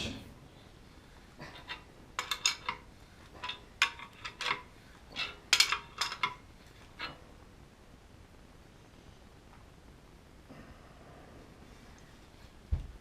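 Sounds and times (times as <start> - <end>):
metal clinks and squeaks: 3.4 - 6.4.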